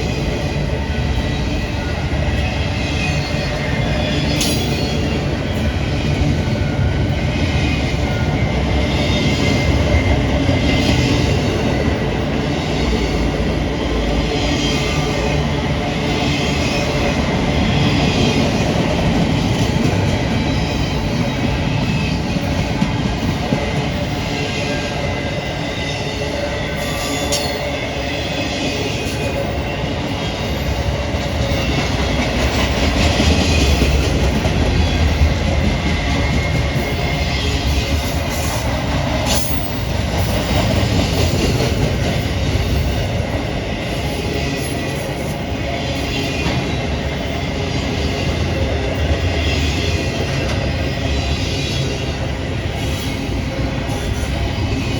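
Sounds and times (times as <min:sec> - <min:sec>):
freight train rumble and clatter: 0:00.0 - 0:54.9
wheels squealing on rails: 0:00.0 - 0:54.9.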